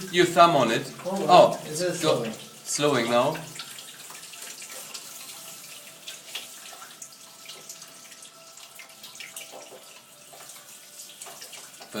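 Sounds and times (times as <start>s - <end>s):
water drips: 0.0s - 12.0s
water trickling and splashing: 0.0s - 12.0s.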